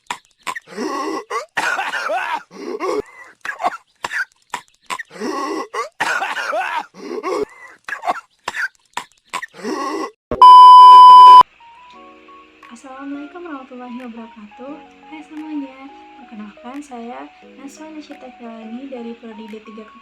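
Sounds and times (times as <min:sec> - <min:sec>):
person coughing harshly: 0:00.7 - 0:03.7, 0:05.2 - 0:07.4
loud electronic beep: 0:10.4 - 0:11.4.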